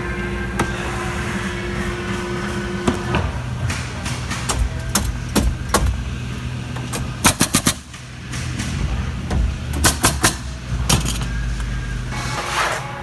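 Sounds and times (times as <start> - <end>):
low machinery hum: 0.0 - 13.0
pneumatic nail guns firing: 6.9 - 8.8, 9.7 - 11.3.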